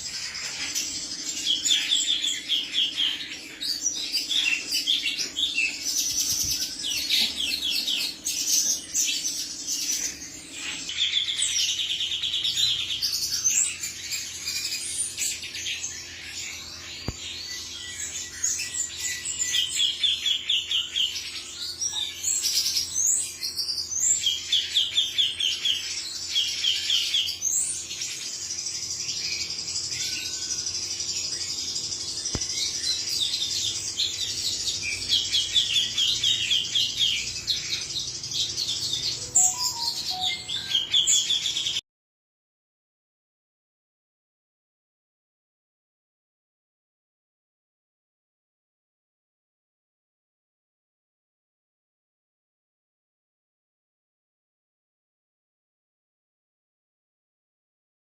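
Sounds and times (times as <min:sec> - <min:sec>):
bird singing with trills: 0:00.0 - 0:41.8.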